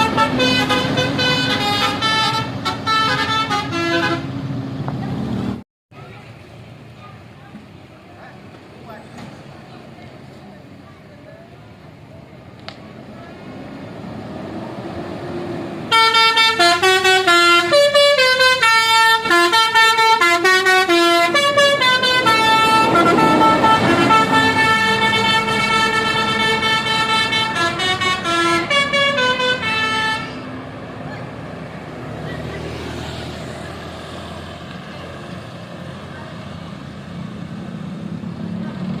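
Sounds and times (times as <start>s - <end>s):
musical air horn melody: 0.0s - 4.3s, 15.9s - 30.4s
bus engine rumble: 0.0s - 39.0s.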